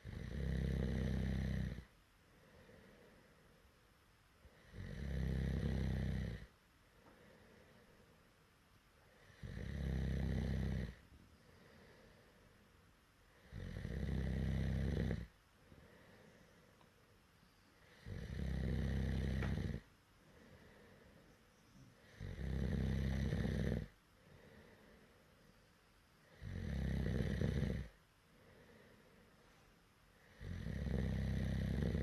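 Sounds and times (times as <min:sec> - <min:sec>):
person snoring loudly: 0:00.0 - 0:01.9, 0:04.7 - 0:06.5, 0:09.3 - 0:11.0, 0:13.5 - 0:15.3, 0:18.0 - 0:19.8, 0:22.2 - 0:23.9, 0:26.4 - 0:27.9, 0:30.3 - 0:32.0
soft breath out: 0:02.3 - 0:03.7, 0:06.9 - 0:08.3, 0:11.3 - 0:12.7, 0:15.6 - 0:18.0, 0:20.2 - 0:22.2, 0:24.1 - 0:25.6, 0:28.2 - 0:30.4.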